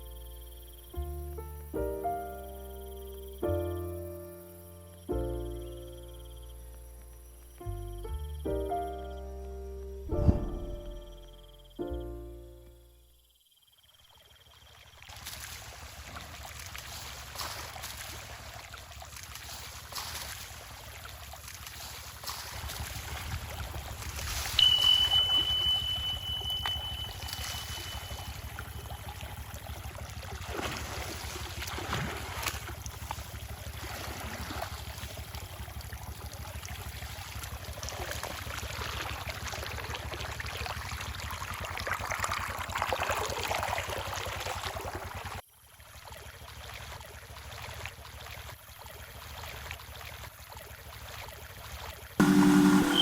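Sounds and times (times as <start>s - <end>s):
stream water running: 13.9s - 53.0s
high steady tone: 24.6s - 28.9s, 52.2s - 53.0s.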